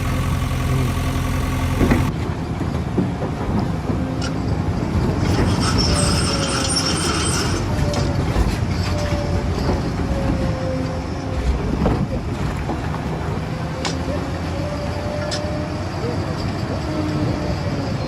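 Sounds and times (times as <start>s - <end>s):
heavy machinery rumbling: 0.0s - 18.0s
high metallic squealing: 4.2s - 11.3s, 13.8s - 18.0s.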